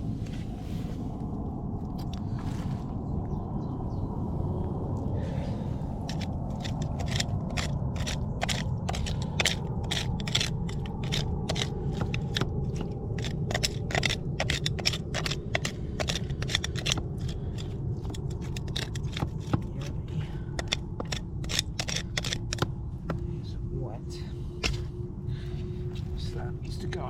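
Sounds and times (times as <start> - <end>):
low rumble: 0.0 - 27.0
hand tool scraping clicks: 6.1 - 22.7.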